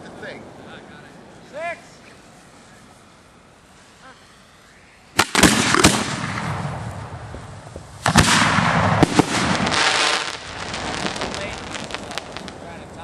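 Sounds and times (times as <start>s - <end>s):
firework crackling: 0.0s - 13.0s
firework bangs: 5.1s - 13.0s.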